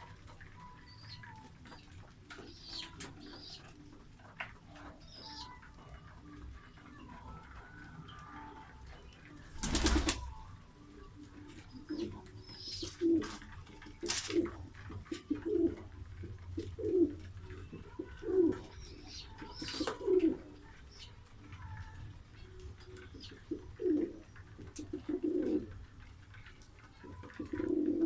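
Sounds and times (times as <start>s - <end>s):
pigeons cooing: 11.6s - 21.6s, 22.4s - 26.0s, 26.9s - 28.0s.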